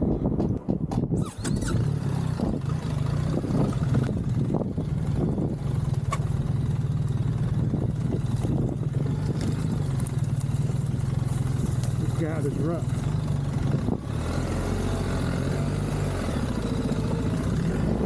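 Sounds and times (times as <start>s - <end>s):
motorcycle engine running: 0.0s - 18.0s.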